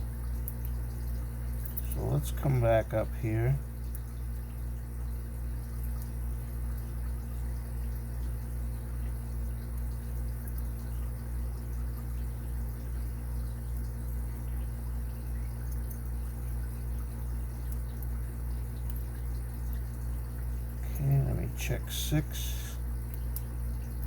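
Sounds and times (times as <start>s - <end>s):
low pulsing hum: 0.0s - 24.0s.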